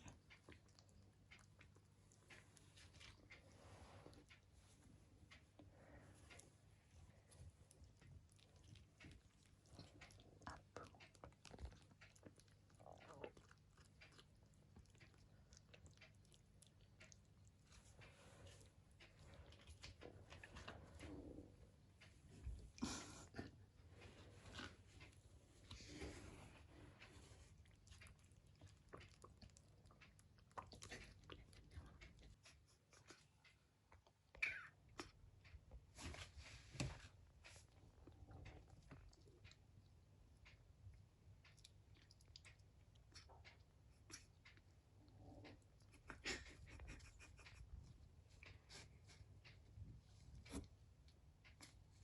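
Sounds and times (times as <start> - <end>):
kitten chewing food: 0.0 - 52.0.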